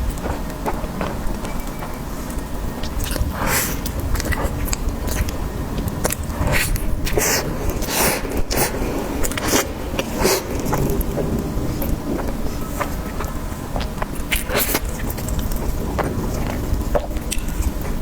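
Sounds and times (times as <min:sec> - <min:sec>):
biting and chewing: 0:00.0 - 0:18.0.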